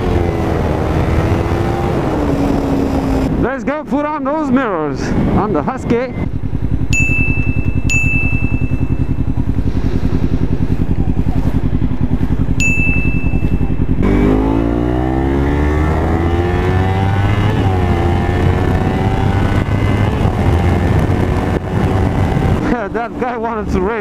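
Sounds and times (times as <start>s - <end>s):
motorcycle engine: 0.0s - 24.0s
short electronic beep: 5.9s - 9.4s, 12.6s - 14.0s.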